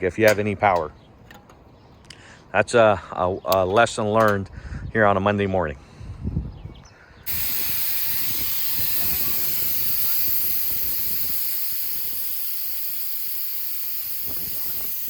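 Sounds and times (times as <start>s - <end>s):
hiss of rushing gas: 7.3s - 15.0s.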